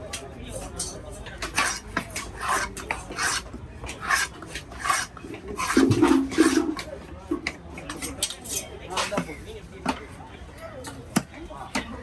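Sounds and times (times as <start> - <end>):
knife scraping fish scales: 0.5 - 6.9.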